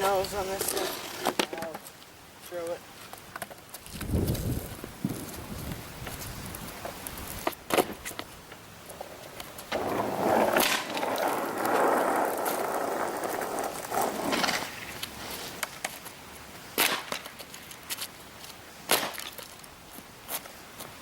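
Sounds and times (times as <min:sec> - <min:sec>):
skateboard wheels rolling on pavement: 0:00.0 - 0:21.0
skateboard clacking on ground: 0:05.1 - 0:16.2.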